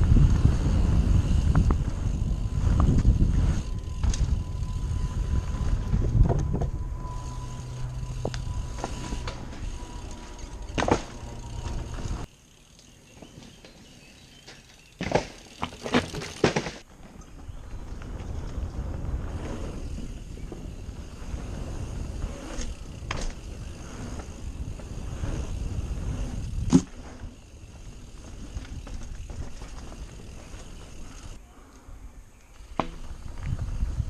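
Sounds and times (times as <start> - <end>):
wind rumbling on microphone: 0.0 - 12.3, 16.9 - 32.3, 33.0 - 34.0
bike clicks and knocks: 1.3 - 18.7, 22.4 - 24.9, 26.4 - 31.4, 32.4 - 33.8.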